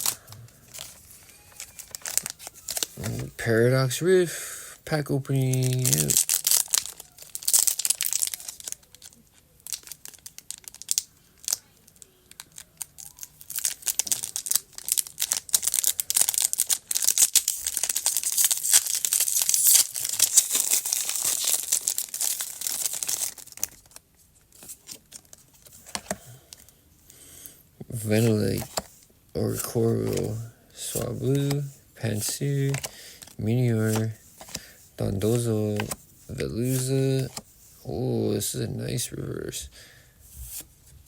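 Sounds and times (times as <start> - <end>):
foil wrapper tearing and crinkling: 0.0 - 3.4, 5.4 - 24.0.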